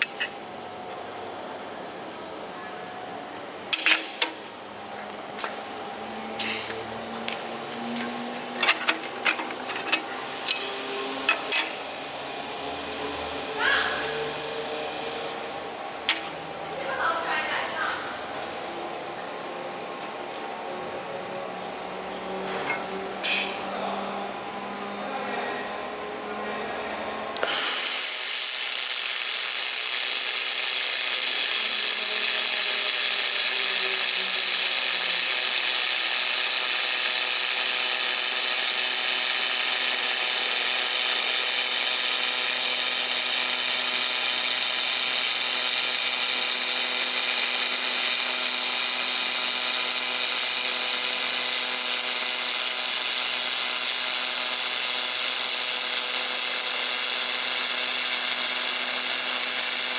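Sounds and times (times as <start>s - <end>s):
laser welder hissing and whining: 27.4s - 59.9s.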